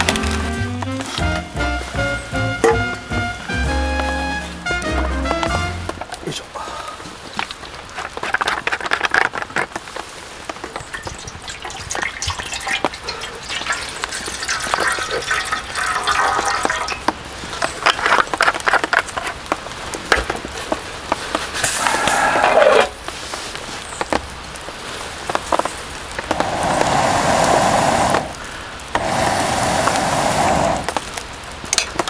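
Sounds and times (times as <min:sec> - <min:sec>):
liquid pouring into vessel: 0:10.8 - 0:17.2.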